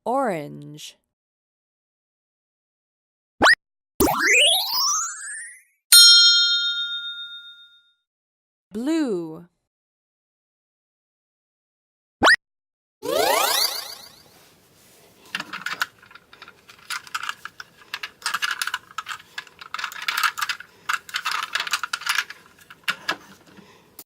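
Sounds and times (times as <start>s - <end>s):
plastic toy pieces clicking and rattling: 15.2s - 24.0s.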